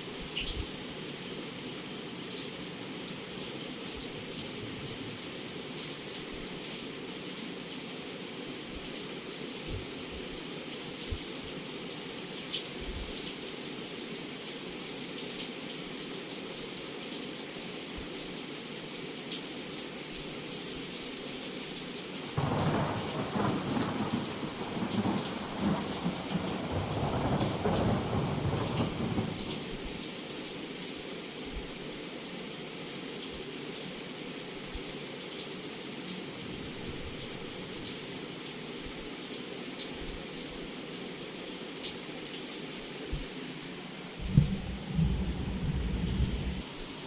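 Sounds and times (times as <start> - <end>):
heavy rain on a window: 0.0 - 47.0
thunder rumbling: 22.4 - 30.0, 44.2 - 46.6.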